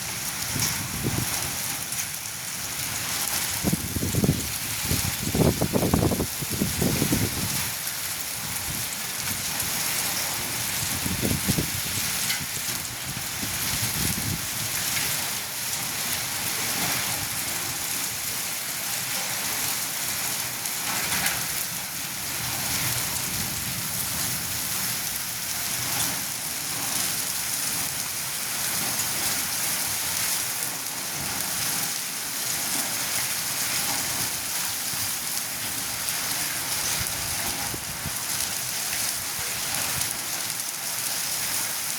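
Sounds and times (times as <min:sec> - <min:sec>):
hail and heavy rain: 0:00.0 - 0:41.9.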